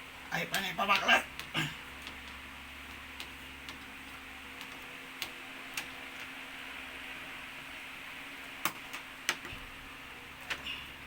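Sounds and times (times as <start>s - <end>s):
sharp clicks and taps of tools: 0.5s - 3.9s.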